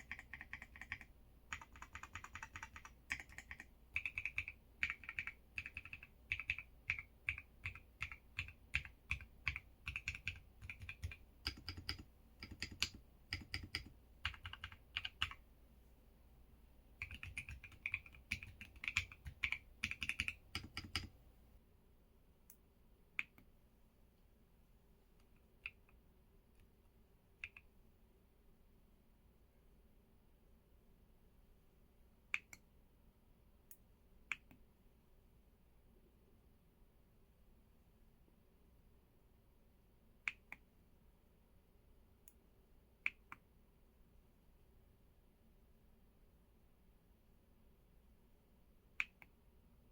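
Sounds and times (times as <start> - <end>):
mechanical keyboard typing: 0.0 - 15.4, 17.0 - 21.1.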